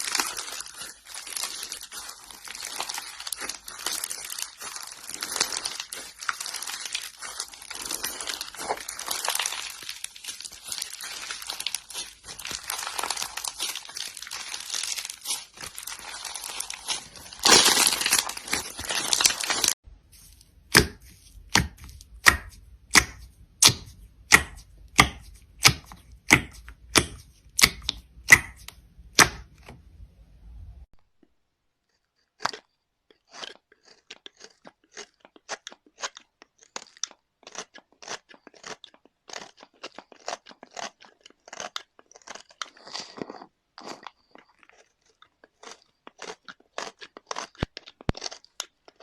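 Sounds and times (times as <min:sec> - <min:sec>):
crackling and crinkling: 0:00.0 - 0:22.1, 0:31.0 - 0:49.0
crisp cuts or snaps: 0:01.2 - 0:19.8, 0:47.3 - 0:49.0.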